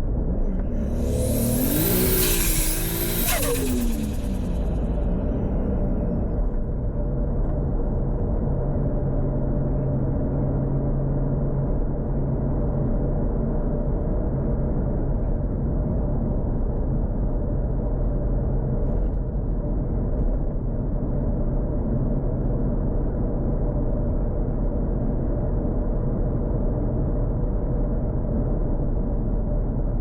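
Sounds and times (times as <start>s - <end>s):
car engine droning steadily: 0.0s - 11.7s.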